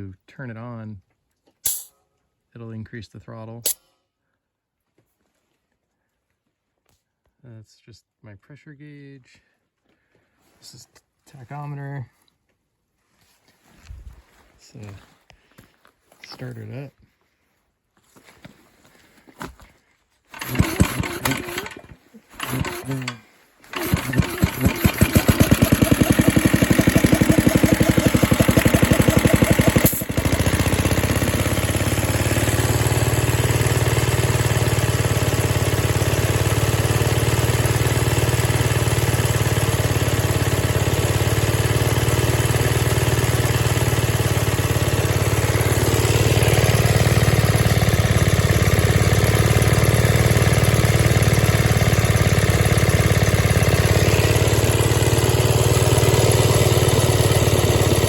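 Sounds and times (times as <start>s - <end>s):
small engine driving air compressor: 20.3s - 58.0s.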